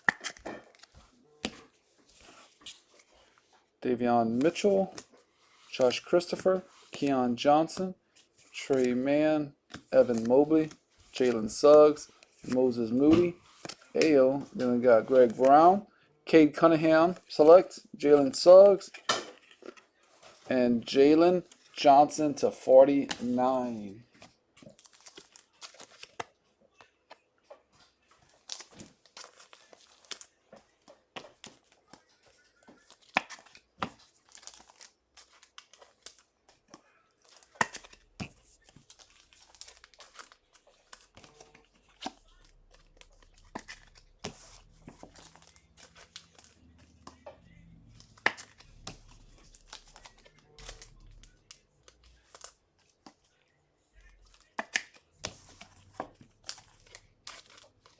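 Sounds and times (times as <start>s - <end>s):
plastic packaging crinkling: 24.6s - 26.3s, 31.3s - 57.9s.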